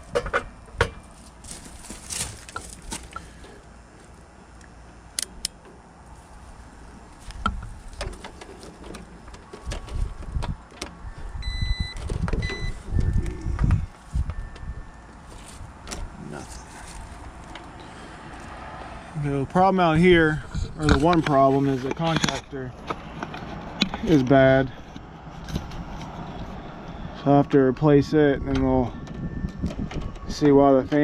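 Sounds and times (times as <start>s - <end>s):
low thumping and handling: 0.0s - 3.7s
short electronic beep: 11.4s - 13.6s.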